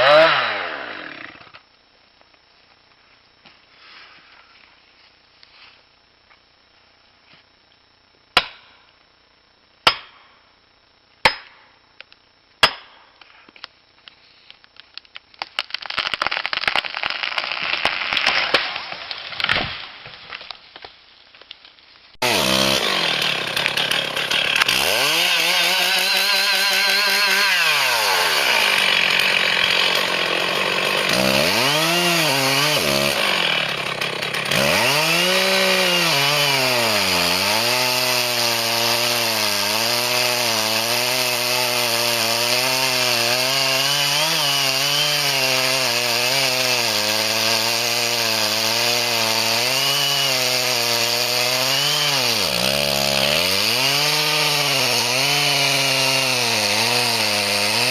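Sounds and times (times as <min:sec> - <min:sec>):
chainsaw revving: 0:00.0 - 0:01.4, 0:22.2 - 0:57.9.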